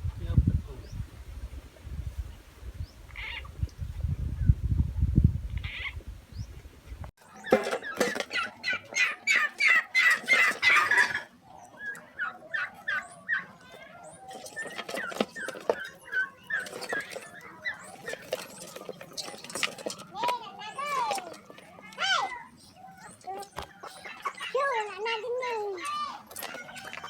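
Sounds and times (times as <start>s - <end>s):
animal calls: 7.3s - 19.6s, 20.6s - 27.0s.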